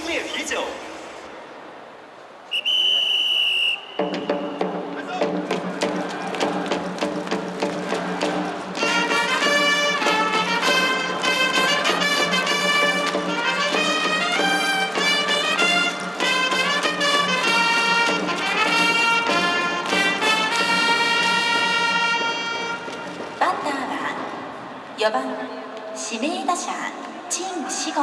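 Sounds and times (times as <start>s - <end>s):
brass cheer music: 4.0s - 24.4s.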